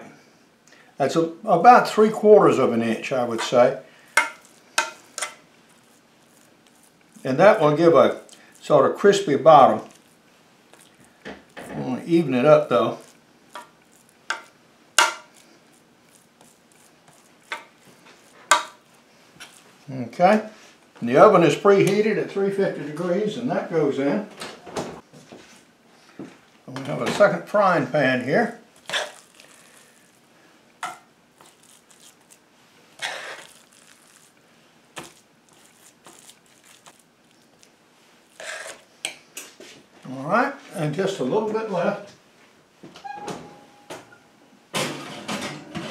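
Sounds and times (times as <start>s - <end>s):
food squishing in a frying pan: 3.0s - 19.9s, 28.6s - 40.0s
utensil scraping a baking pan: 38.3s - 38.9s.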